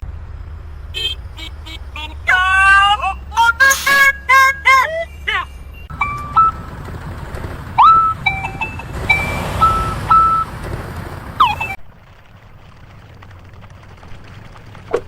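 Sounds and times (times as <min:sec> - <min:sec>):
cartoon horn honks and beeps: 0:01.0 - 0:06.7, 0:07.8 - 0:10.5
swooping sound effect: 0:03.4 - 0:04.9.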